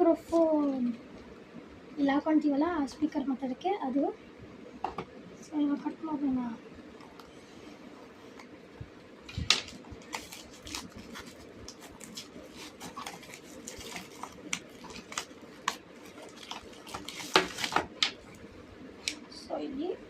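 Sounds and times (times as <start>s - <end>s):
packaging clicks and scrapes: 9.6s - 18.2s.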